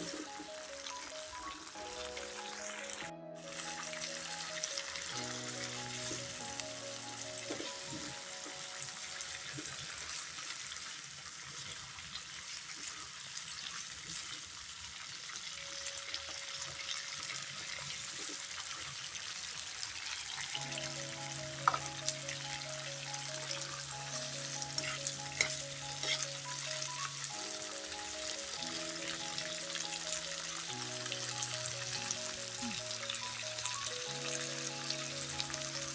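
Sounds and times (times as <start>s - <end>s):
soft background music: 0.0s - 10.5s, 15.4s - 35.9s
meat sizzling in a pan: 0.0s - 35.9s.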